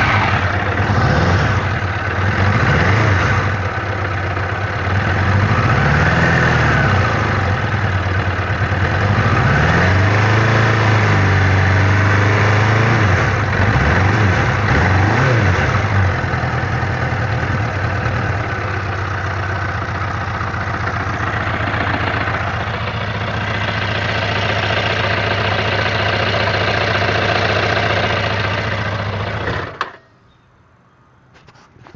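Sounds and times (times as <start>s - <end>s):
motorcycle engine idling and revving: 0.0s - 30.4s.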